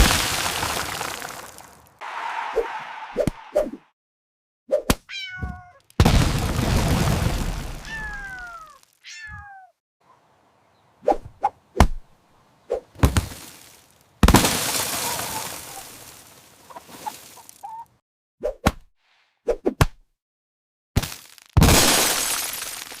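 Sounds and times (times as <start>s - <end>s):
cartoon crash: 2.0s - 3.8s
meow-like cries: 5.1s - 5.8s, 7.8s - 9.8s.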